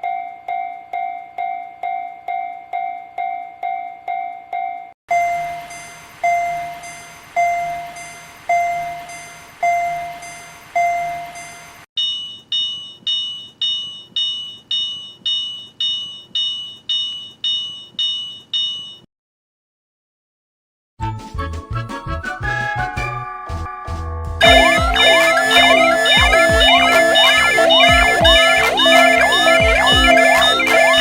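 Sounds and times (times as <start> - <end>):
low warning bell ringing slowly: 0.0 - 19.0, 24.4 - 31.0
high-pitched bell ringing fast: 24.4 - 31.0.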